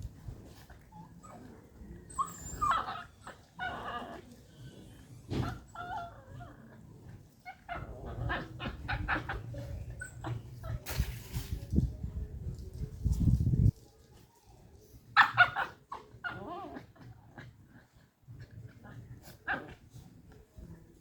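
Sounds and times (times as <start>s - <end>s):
dogs yipping while playing: 2.1s - 4.2s, 5.0s - 6.5s, 15.2s - 16.6s.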